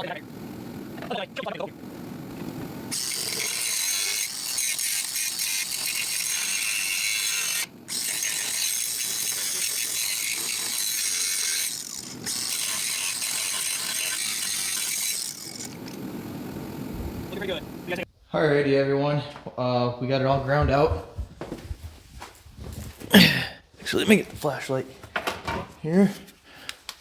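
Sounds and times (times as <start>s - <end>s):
angle grinder grinding metal: 0.0s - 18.0s.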